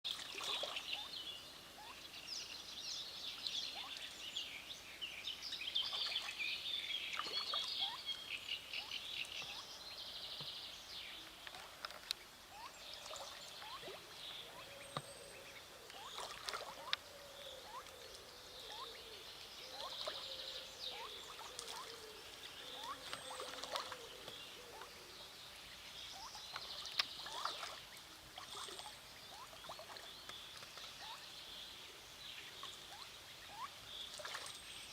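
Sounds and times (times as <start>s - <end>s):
birds chirping: 0.3s - 34.9s
faint clicks: 11.2s - 12.2s.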